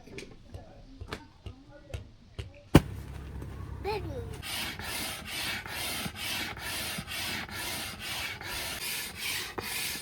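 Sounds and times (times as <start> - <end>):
scratchy rubbing strokes: 4.3 - 10.0.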